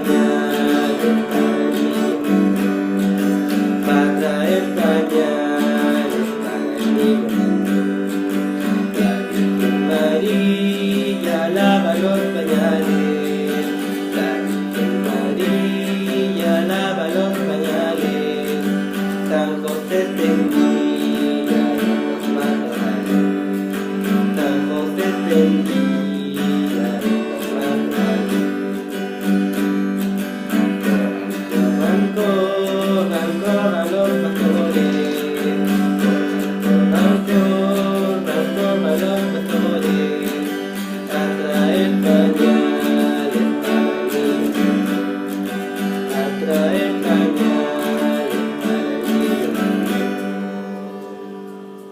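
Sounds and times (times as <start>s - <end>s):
acoustic guitar playing: 0.0s - 51.9s
person singing: 0.0s - 51.9s.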